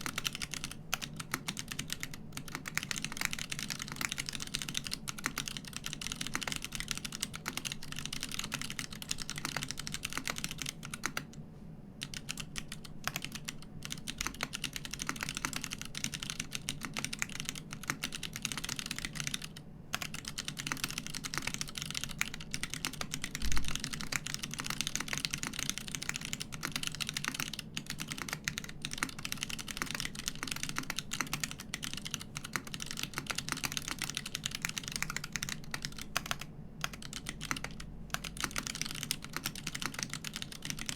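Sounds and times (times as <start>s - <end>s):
fast mechanical keyboard typing: 0.0s - 11.4s, 12.0s - 40.9s.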